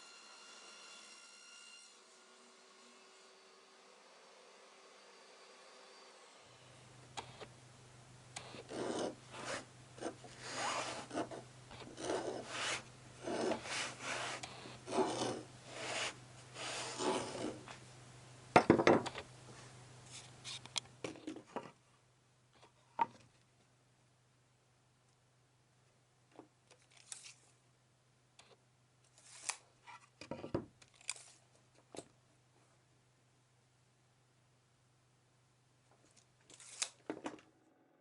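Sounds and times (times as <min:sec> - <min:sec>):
sanding wood by hand: 0:12.1 - 0:17.6.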